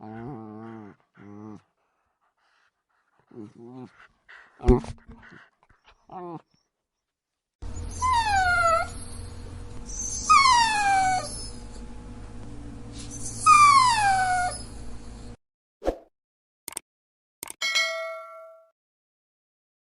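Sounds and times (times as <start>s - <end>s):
dog whining: 7.6s - 11.8s, 13.0s - 14.8s
ringing chime: 17.6s - 18.7s.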